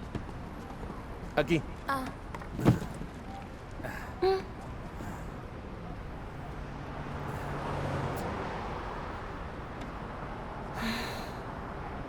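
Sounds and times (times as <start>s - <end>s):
street traffic noise: 0.0s - 12.0s
vehicle passing: 6.4s - 12.0s.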